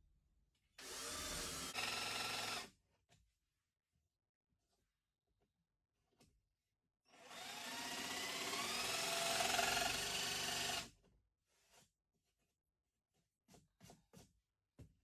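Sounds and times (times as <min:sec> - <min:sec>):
power drill spinning: 0:00.8 - 0:02.7, 0:07.2 - 0:10.9.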